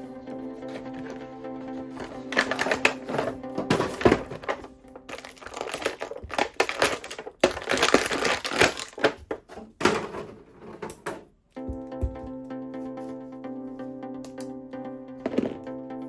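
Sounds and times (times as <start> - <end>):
background music: 0.0 - 8.8, 11.5 - 16.0
packaging crinkling and rustling: 1.9 - 9.7.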